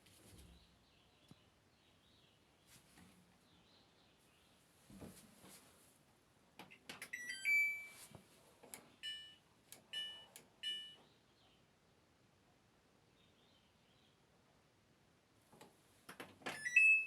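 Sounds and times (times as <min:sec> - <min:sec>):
washing machine electronic beeps: 0:07.0 - 0:08.1, 0:09.0 - 0:11.1, 0:16.5 - 0:17.0.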